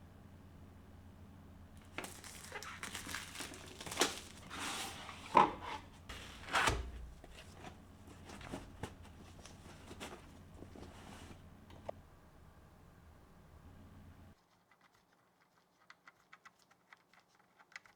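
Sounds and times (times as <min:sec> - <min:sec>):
packaging crinkling and rustling: 0:01.8 - 0:11.9.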